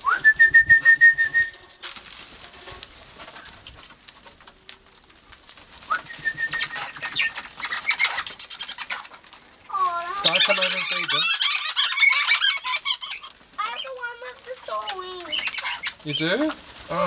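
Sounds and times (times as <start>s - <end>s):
parrot whistled call: 5.9s - 8.2s.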